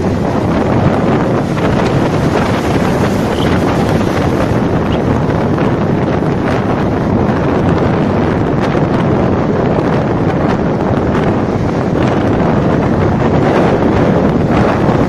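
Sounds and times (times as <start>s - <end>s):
sea waves washing: 0.0s - 6.6s
wind blowing across microphone: 0.0s - 15.0s.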